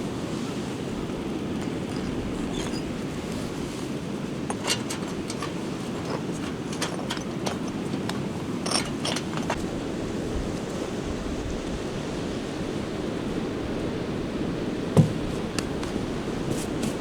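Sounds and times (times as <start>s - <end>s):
sea waves: 0.0s - 17.0s
wind: 0.0s - 17.0s.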